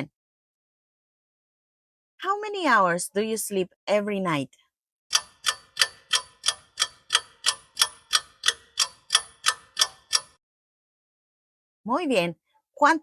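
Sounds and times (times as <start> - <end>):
clock ticking: 5.1 - 10.4.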